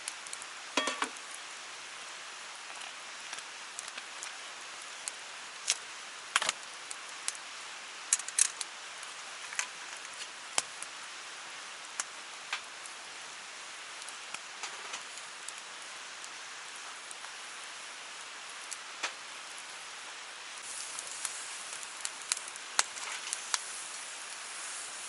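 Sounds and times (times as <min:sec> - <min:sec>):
water hissing: 0:20.6 - 0:25.0.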